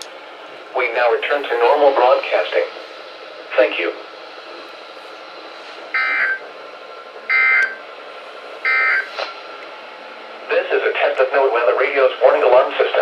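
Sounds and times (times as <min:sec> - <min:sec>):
radio hiss: 0:00.7 - 0:06.6, 0:10.4 - 0:13.0.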